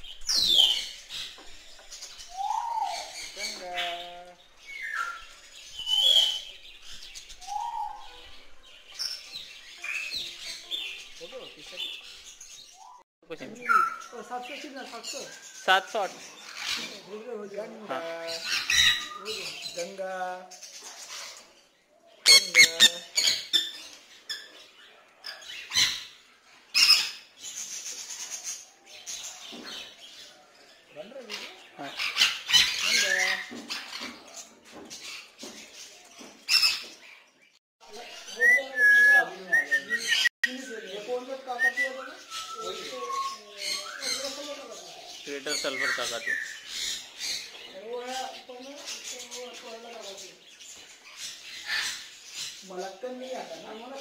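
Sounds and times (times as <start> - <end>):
parrots chirping and squawking: 0.0 - 54.0
parrots squawking: 2.0 - 8.4, 17.9 - 19.9, 22.2 - 24.6, 25.2 - 29.3, 31.2 - 34.4, 36.5 - 37.0, 51.0 - 52.6.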